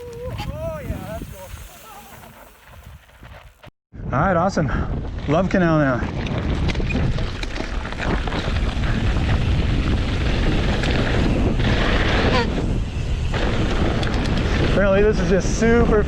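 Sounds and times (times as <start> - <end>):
bike rattling: 0.0 - 3.7, 5.0 - 16.0
tyres rolling over dirt and rocks: 0.0 - 3.7, 5.1 - 12.3
wind buffeting microphone: 0.0 - 16.0.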